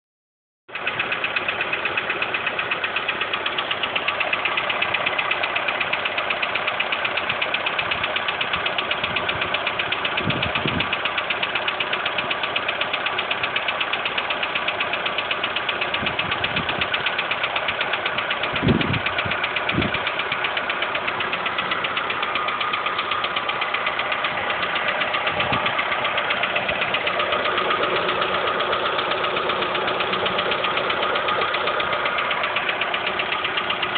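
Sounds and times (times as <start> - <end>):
engine ticking knock: 0.7 - 33.9
dull low thumps: 18.4 - 28.6.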